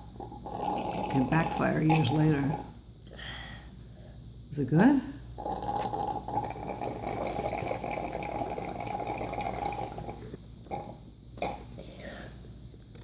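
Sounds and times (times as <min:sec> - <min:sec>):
child sucking drink through straw: 0:05.4 - 0:10.9.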